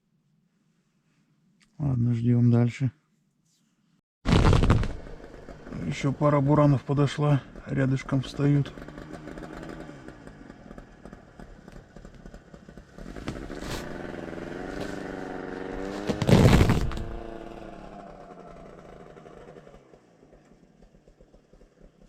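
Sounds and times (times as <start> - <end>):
snowmobile engines revving: 5.2 - 11.2, 13.0 - 19.1.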